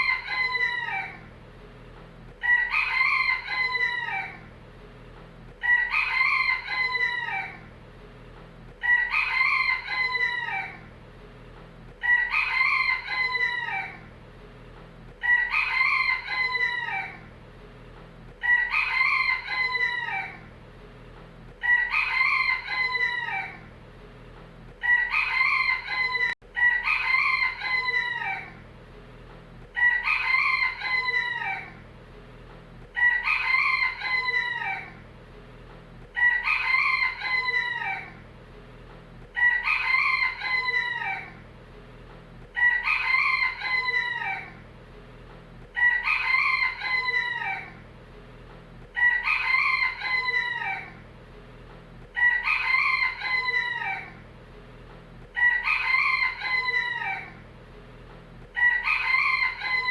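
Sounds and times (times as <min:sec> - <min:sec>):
rooster crowing: 0:00.0 - 0:01.3, 0:02.4 - 0:04.5, 0:05.6 - 0:07.7, 0:08.8 - 0:10.9, 0:12.0 - 0:14.1, 0:15.2 - 0:17.3, 0:18.4 - 0:20.5, 0:21.6 - 0:23.7, 0:24.8 - 0:28.6, 0:29.8 - 0:31.8, 0:32.9 - 0:35.0, 0:36.0 - 0:38.2, 0:39.2 - 0:41.4, 0:42.4 - 0:44.6, 0:45.6 - 0:47.8, 0:48.8 - 0:51.0, 0:52.0 - 0:54.2, 0:55.2 - 0:57.4, 0:58.4 - 0:59.9.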